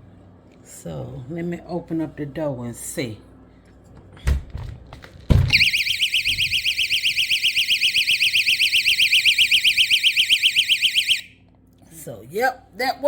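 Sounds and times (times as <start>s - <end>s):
door thump: 4.2s - 6.8s
door stop alarm shrieking: 5.5s - 11.4s.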